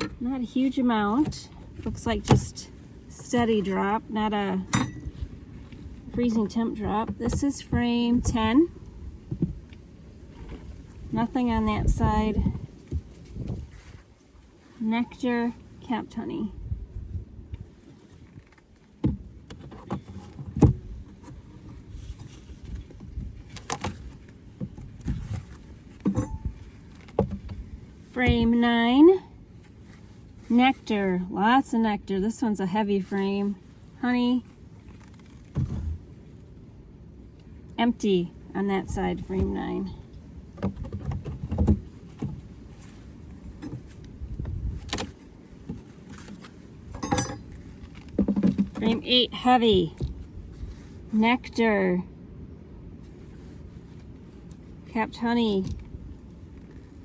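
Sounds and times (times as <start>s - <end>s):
wind rumble on microphone: 0.0s - 29.0s, 38.8s - 57.0s
wooden frames knocking and scraping: 43.4s - 49.0s.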